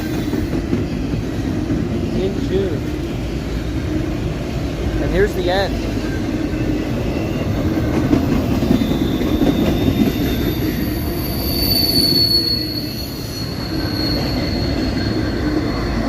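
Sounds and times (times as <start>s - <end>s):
train wheels rumbling on rail: 0.0s - 16.0s
high wheel squeal: 6.0s - 16.0s.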